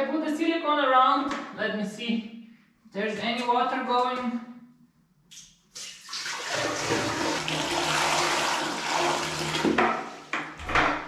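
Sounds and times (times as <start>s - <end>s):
toilet flushing: 5.8s - 10.6s.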